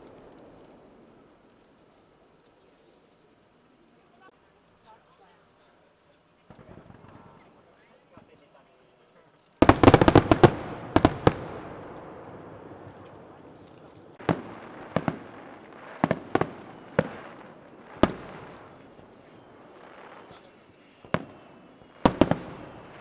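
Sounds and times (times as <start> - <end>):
fireworks bangs: 0.0 - 1.9, 6.5 - 8.3, 9.6 - 23.0.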